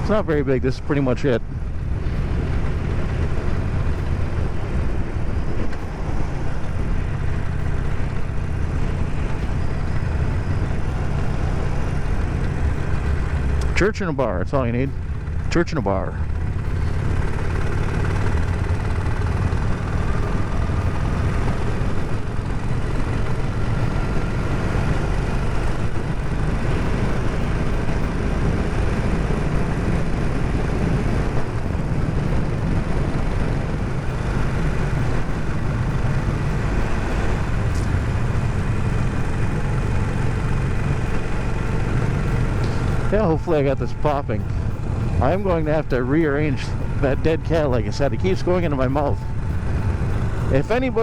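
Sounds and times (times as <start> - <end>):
motorcycle engine running: 0.0 - 51.0
wind rumble on microphone: 0.0 - 51.0.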